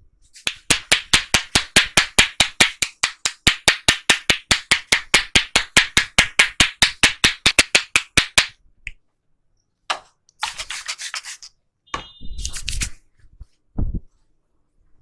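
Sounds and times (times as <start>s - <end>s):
fast hand tapping: 0.5s - 8.6s
rubbing of scalp and hair: 10.4s - 11.5s.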